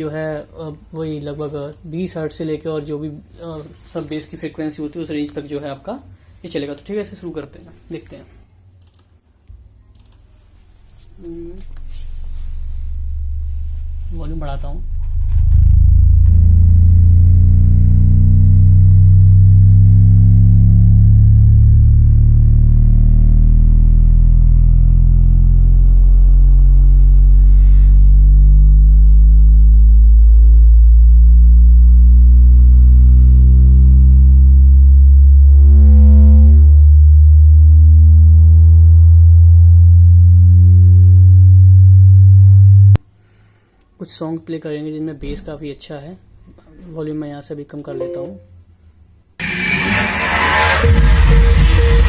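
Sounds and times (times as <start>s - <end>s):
bass test tone sweep: 10.9s - 43.0s, 49.4s - 52.0s.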